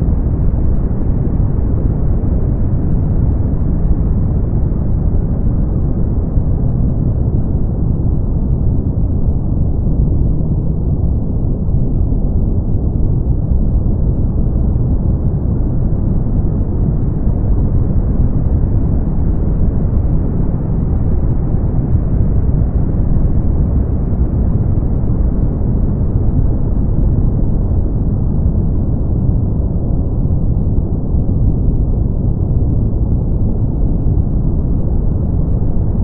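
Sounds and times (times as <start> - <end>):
brown noise: 0.0 - 36.0.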